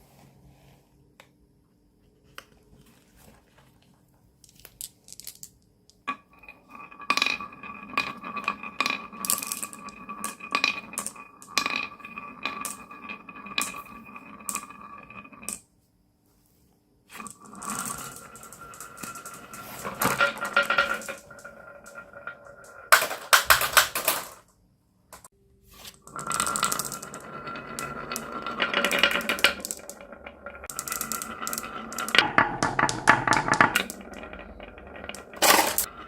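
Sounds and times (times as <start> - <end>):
marbles clattering on wood: 4.4 - 15.6, 17.1 - 24.5, 25.9 - 36.0.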